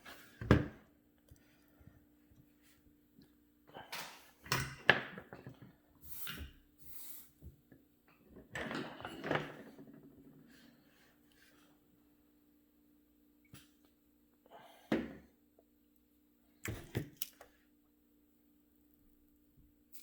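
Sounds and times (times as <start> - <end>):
short scraping hisses: 6.0 - 7.4.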